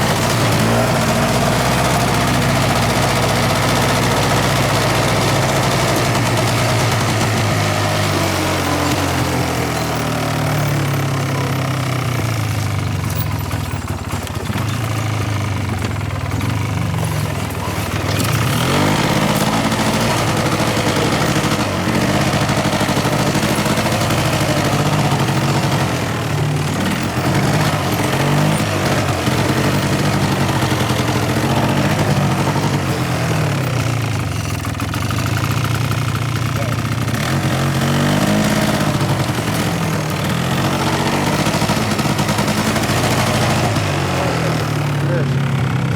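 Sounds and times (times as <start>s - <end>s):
small vehicle engine running: 0.0s - 45.9s.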